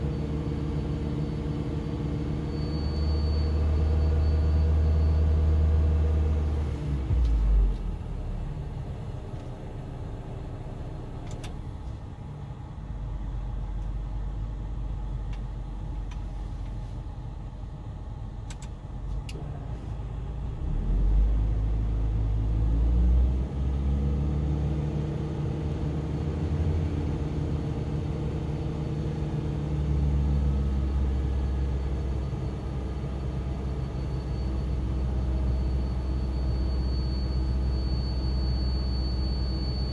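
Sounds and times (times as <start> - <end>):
car air conditioning hum: 6.6 - 20.4.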